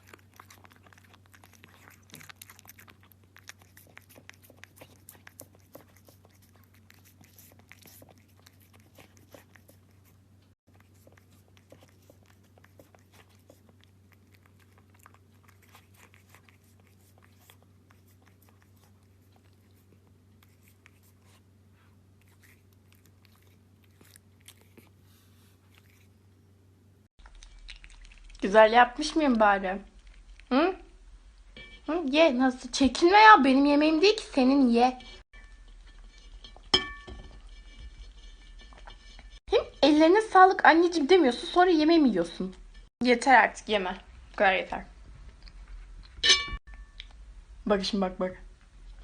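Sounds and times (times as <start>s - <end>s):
cat crunching food: 0.0s - 26.3s, 27.2s - 28.4s, 29.8s - 30.5s.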